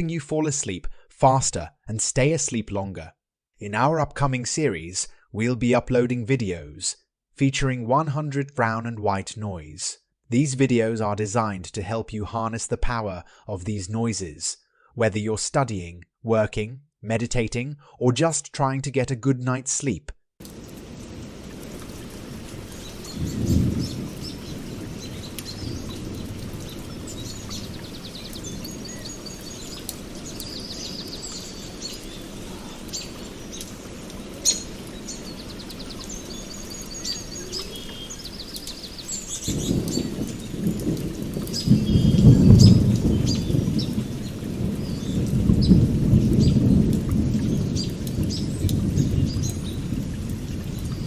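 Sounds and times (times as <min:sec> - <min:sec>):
birds chirping: 0:20.4 - 0:50.1
steady rain: 0:20.4 - 0:51.0
thunder rumble: 0:20.5 - 0:34.8, 0:38.6 - 0:51.0.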